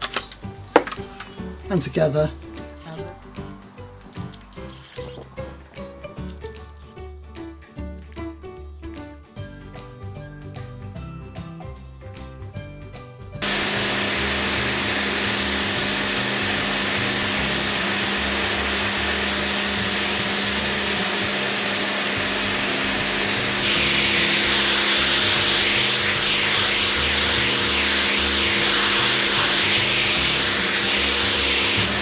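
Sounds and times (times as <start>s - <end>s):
pressure washer motor humming: 13.4s - 32.0s
water spraying hiss: 13.4s - 32.0s.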